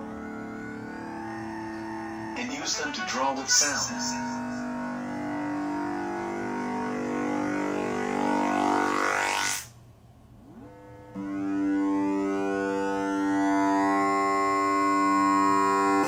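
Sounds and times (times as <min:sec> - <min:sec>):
rising electronic sweep: 0:00.0 - 0:09.7
buzzy electronic tones: 0:00.0 - 0:16.0.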